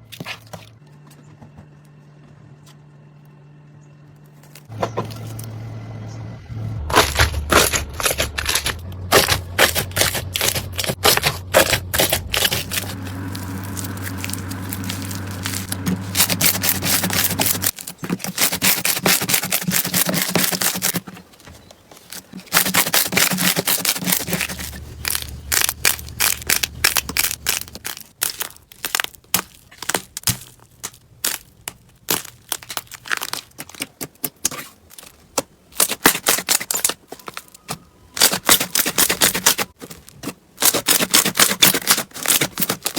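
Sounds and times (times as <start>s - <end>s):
slime crackling and popping: 6.9s - 20.9s, 22.5s - 33.8s.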